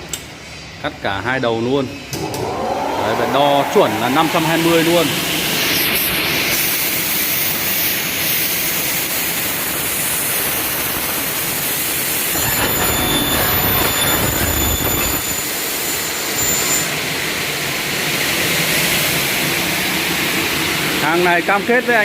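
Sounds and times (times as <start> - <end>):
saw machine running: 11.5 - 17.1
high ringing tones: 12.3 - 17.0
saw blades cutting metal: 12.3 - 17.0.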